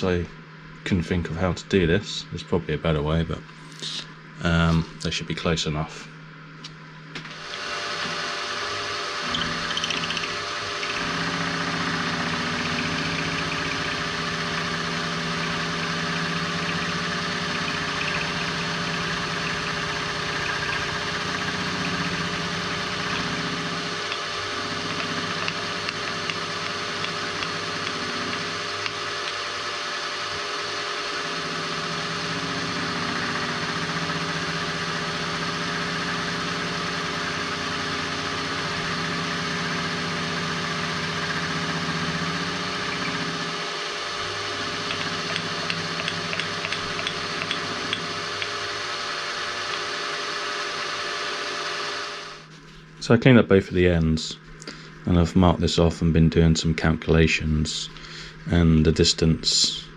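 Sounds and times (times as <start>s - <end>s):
milling machine cutting metal: 7.2s - 52.5s.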